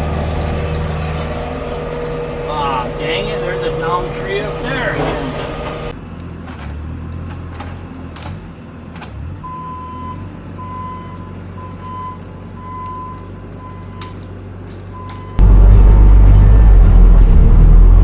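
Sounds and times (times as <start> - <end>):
diesel engine running: 0.0 - 18.0
backup alarm beeping: 0.4 - 5.9, 9.4 - 14.2, 14.9 - 15.4.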